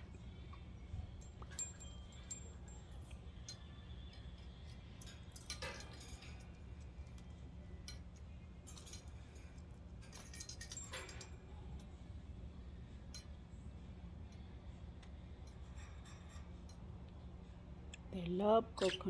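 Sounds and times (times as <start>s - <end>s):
steady low hum: 0.0s - 19.0s
small clicks and clinks: 1.1s - 12.0s, 13.1s - 13.4s, 15.0s - 16.9s.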